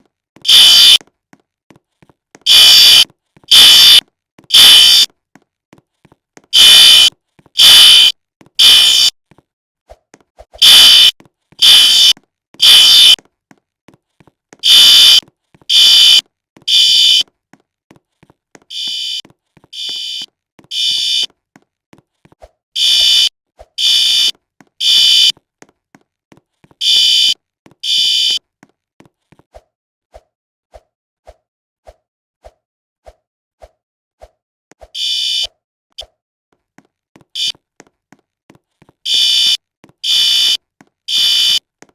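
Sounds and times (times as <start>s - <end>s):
fire alarm beeps: 0.5s - 1.0s, 2.5s - 5.1s, 6.6s - 9.2s, 10.6s - 13.2s, 14.6s - 17.2s, 19.8s - 21.3s, 22.8s - 25.3s, 26.8s - 28.4s, 35.0s - 35.5s, 39.1s - 41.6s.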